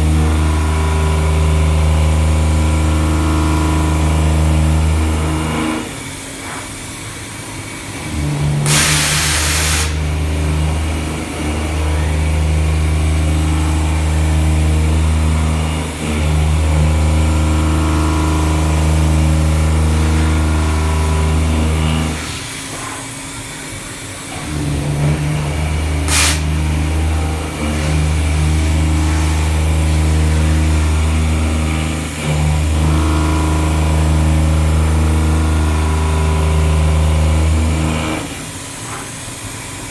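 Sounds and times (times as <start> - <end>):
milling machine humming: 0.0 - 39.9
loud hiss: 8.7 - 10.0, 26.1 - 26.6.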